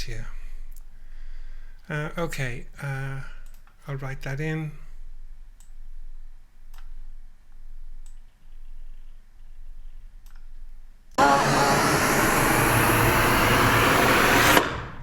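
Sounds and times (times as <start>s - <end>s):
faint low room hum: 0.0s - 11.2s
computer mouse clicks: 3.4s - 3.8s, 6.7s - 7.0s, 8.0s - 9.6s, 10.2s - 10.5s
loud steady rushing noise: 11.2s - 15.0s.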